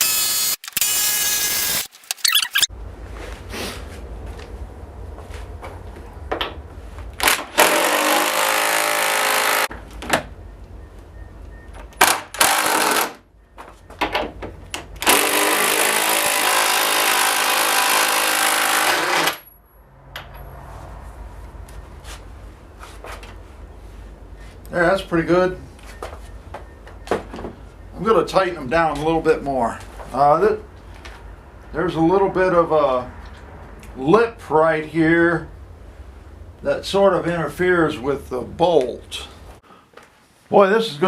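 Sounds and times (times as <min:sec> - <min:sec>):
impact driver hammering bolts: 0:11.9 - 0:13.1, 0:14.0 - 0:19.4.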